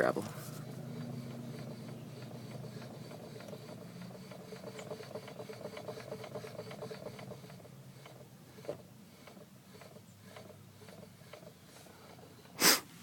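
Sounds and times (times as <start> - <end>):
wheel hub clicking: 0.0 - 12.6
faint brake rub: 0.0 - 13.0.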